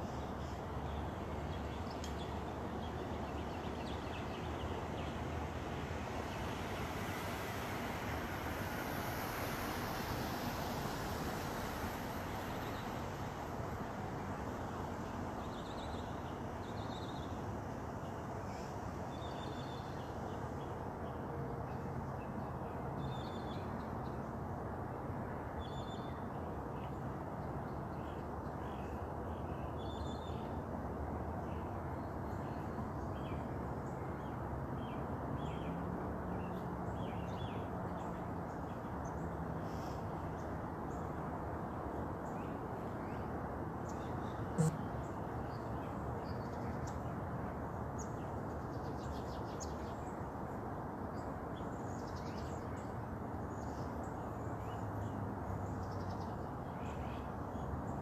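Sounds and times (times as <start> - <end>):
distant highway traffic: 0.0 - 58.0
small birds chirping: 43.8 - 47.0.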